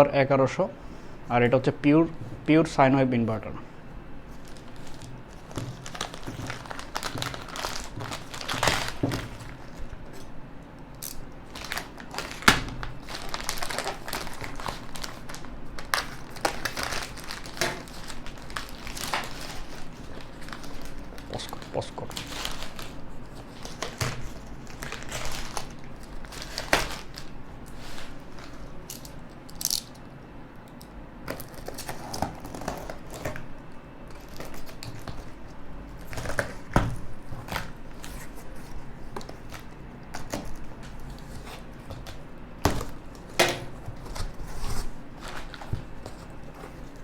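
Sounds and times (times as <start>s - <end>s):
packaging rustling and crinkling: 4.2s - 10.4s, 11.0s - 29.9s, 31.3s - 47.0s.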